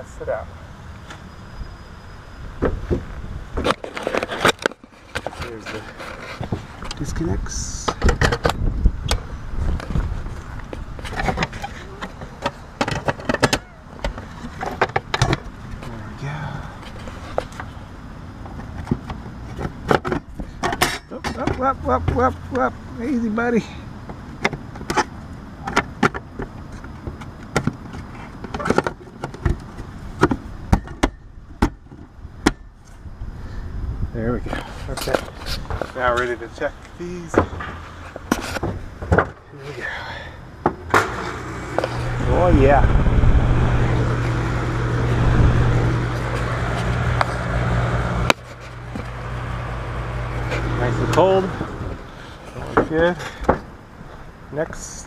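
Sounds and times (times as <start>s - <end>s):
condenser fan air noise: 22.8s - 55.0s
low hum: 40.4s - 52.7s.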